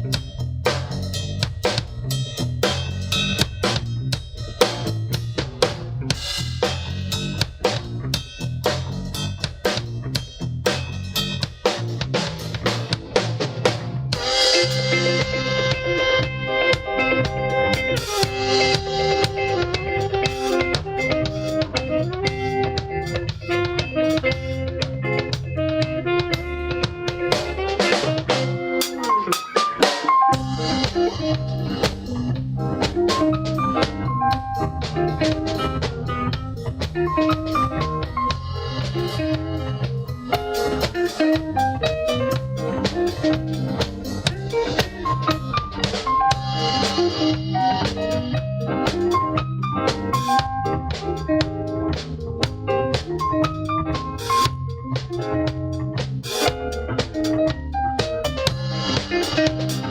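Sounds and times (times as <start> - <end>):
band music: 0.0 - 59.9
bass line: 0.0 - 59.9
drum-kit beat: 0.0 - 59.9
melody of held notes: 14.2 - 59.9.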